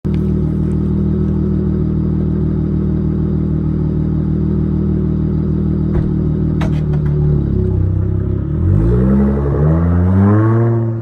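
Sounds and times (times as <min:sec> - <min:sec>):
car engine idling: 0:00.1 - 0:08.5
exhaust pop: 0:05.9 - 0:07.4.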